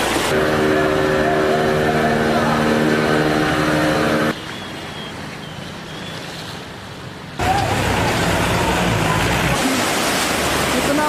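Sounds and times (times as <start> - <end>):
rushing water: 0.0 - 11.0
vehicles passing: 0.0 - 11.0.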